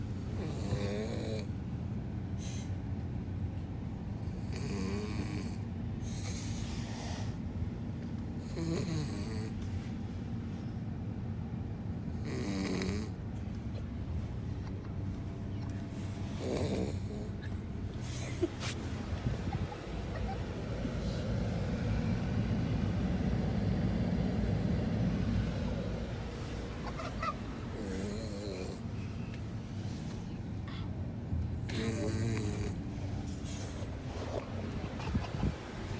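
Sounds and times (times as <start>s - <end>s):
puppy snoring: 0.3s - 1.6s, 4.2s - 7.4s, 8.4s - 9.6s, 12.0s - 13.2s, 16.2s - 17.5s, 26.8s - 29.1s, 31.6s - 34.7s.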